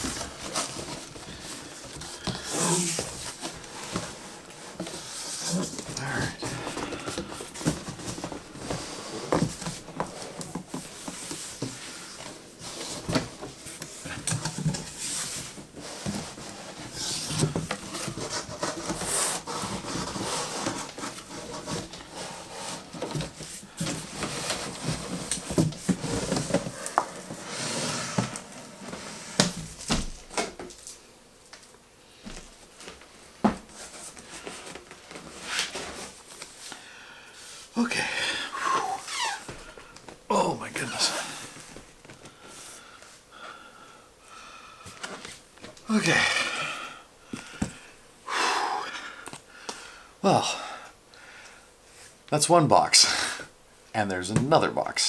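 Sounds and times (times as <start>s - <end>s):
cardboard scraping and rubbing: 0.0s - 30.3s.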